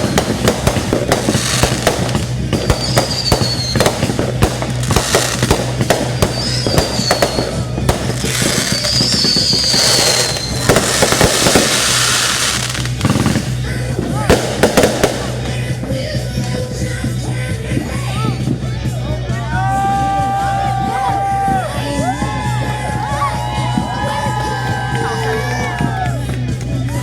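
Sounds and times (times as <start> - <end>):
fireworks whistling: 0.0 - 15.6
fireworks bangs and crackles: 0.0 - 27.0
music playing: 0.0 - 27.0.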